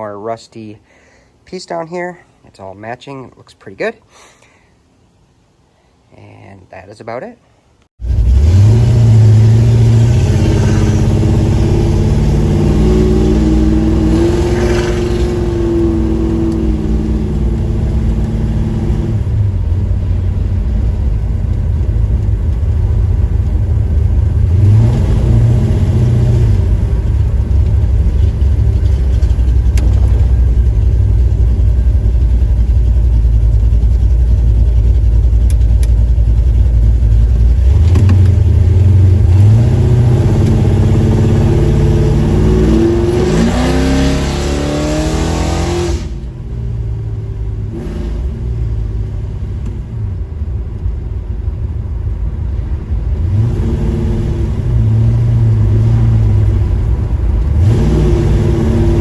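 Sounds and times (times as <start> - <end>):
car engine rumbling: 7.9 - 59.0.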